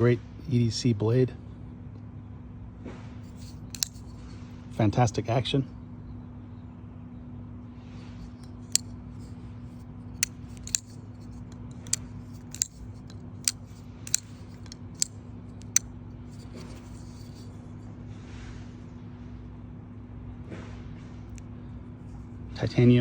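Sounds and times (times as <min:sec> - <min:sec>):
folding knife metallic clicks: 0:03.4 - 0:04.1, 0:10.2 - 0:15.8.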